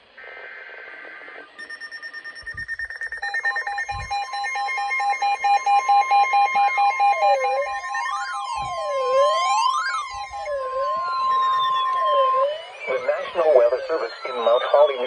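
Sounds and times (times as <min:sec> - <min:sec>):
rapidly pulsing electronic beeps: 0:00.0 - 0:15.0
buzzy data burst: 0:00.2 - 0:15.0.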